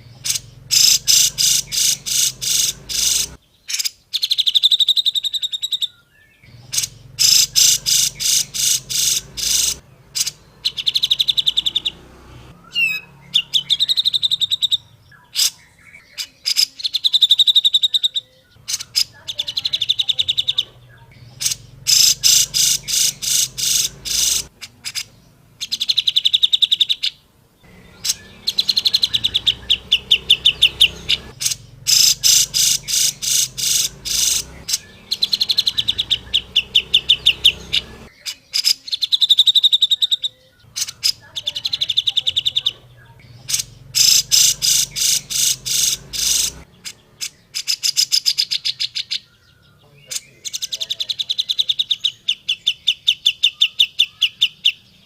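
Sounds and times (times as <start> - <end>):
bird rattling chatter: 0.3 - 3.4, 6.8 - 10.4, 21.4 - 25.1, 31.1 - 35.7.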